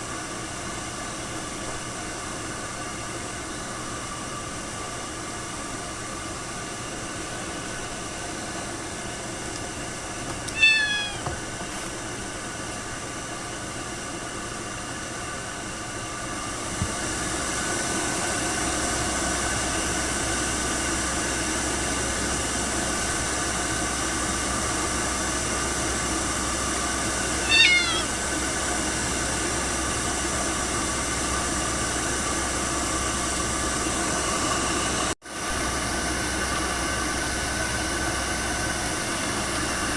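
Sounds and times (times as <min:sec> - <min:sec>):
cat meowing: 0:10.5 - 0:11.3, 0:27.4 - 0:28.2.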